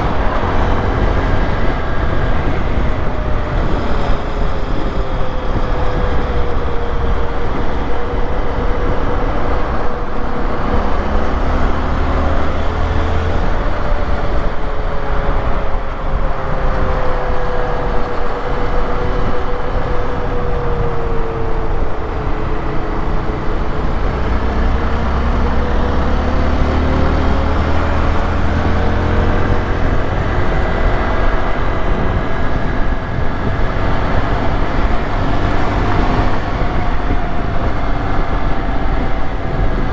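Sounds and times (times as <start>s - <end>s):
wind and road noise: 0.0s - 39.9s
motorcycle engine running: 20.6s - 31.3s.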